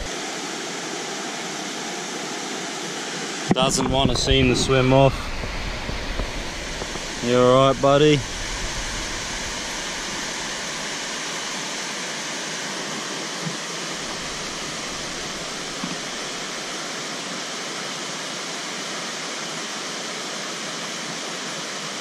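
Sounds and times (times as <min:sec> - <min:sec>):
floodwater pouring over a weir: 0:13.6 - 0:17.3.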